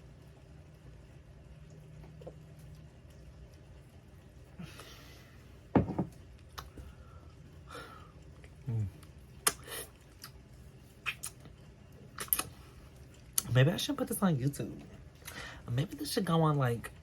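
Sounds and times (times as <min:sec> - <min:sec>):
mouth clicks and smacks: 0:06.5 - 0:06.8, 0:08.4 - 0:10.4, 0:11.0 - 0:12.6
breaths: 0:06.8 - 0:08.2, 0:15.2 - 0:15.7.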